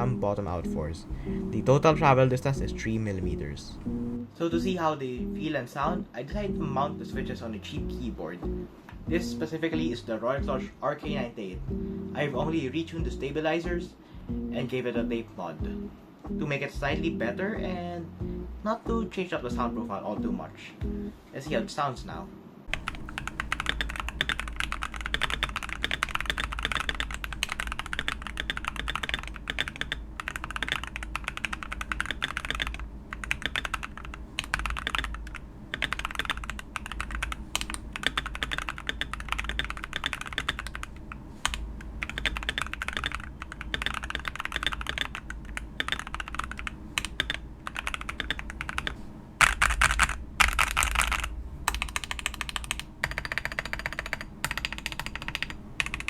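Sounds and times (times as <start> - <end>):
mechanical keyboard typing: 0.0 - 4.2, 22.7 - 56.0.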